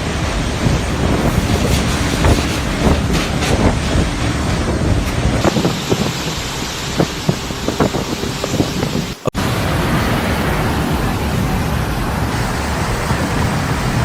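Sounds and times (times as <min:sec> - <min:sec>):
storm wind on microphone: 0:00.0 - 0:14.0
knocks and clatters: 0:00.5 - 0:09.1.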